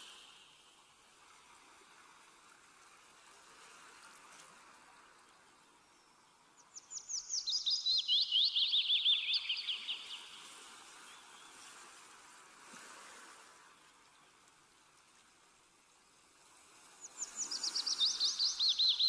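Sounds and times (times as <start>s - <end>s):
faint outdoor background noise: 0.0s - 19.0s
small songbird singing: 6.6s - 10.4s, 17.0s - 19.0s.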